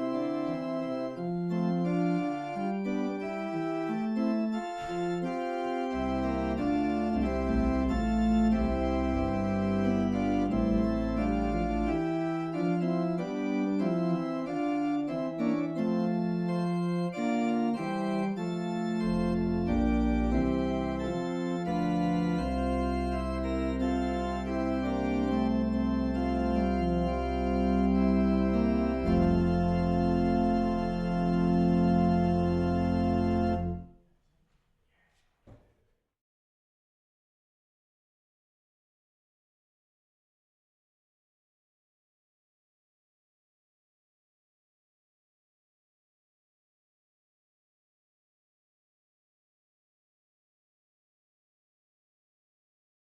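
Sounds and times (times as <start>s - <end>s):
church organ chords: 0.0s - 33.9s
deep organ pedal bass: 0.0s - 33.9s.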